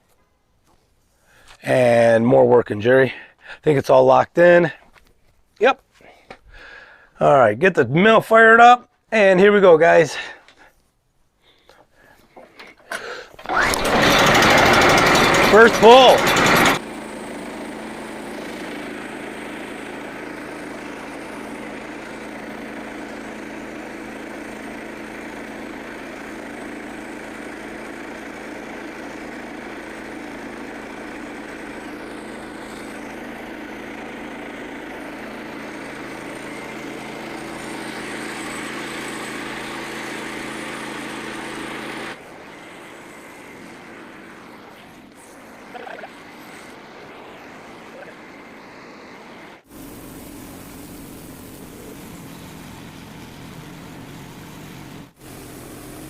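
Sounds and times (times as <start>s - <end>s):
small gasoline engine running: 13.0s - 56.0s.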